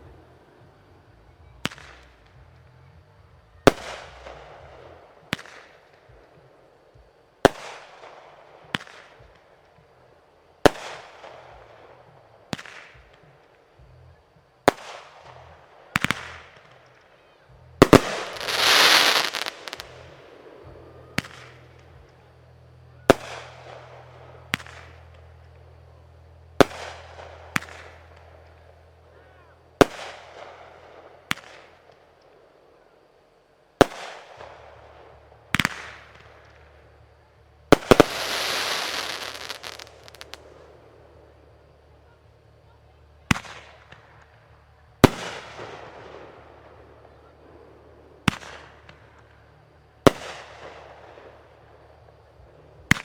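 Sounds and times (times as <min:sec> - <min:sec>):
fireworks bursting with bangs: 0:03.6 - 0:06.4, 0:07.0 - 0:09.7, 0:10.6 - 0:13.6, 0:14.6 - 0:17.1, 0:17.8 - 0:22.3, 0:23.0 - 0:25.9, 0:26.6 - 0:28.7, 0:29.8 - 0:32.0, 0:33.8 - 0:41.6, 0:43.2 - 0:53.0
hissing firework burst: 0:17.8 - 0:22.0, 0:37.7 - 0:41.0.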